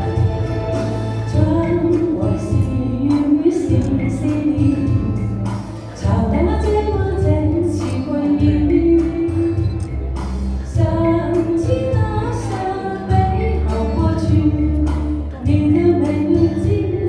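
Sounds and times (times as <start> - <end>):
pulsing bass beat: 0.0 - 12.5
woman singing pop ballad: 1.3 - 17.0.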